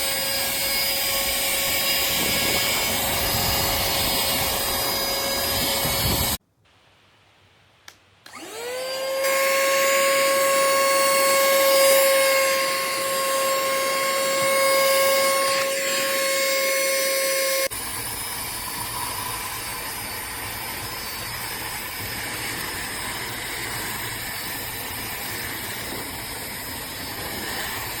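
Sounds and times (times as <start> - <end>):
handheld vacuum cleaner whine: 0.0 - 6.4, 8.3 - 28.0.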